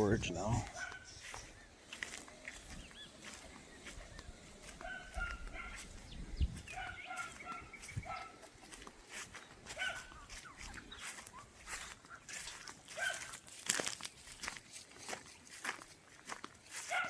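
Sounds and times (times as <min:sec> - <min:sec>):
fowl calling: 0:03.0 - 0:08.4, 0:09.7 - 0:13.3.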